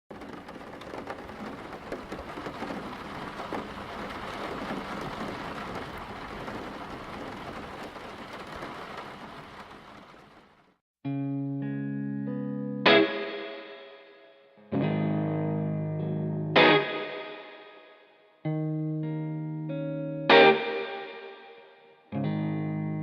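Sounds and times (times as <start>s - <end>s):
steady rain falling: 0.1s - 10.8s.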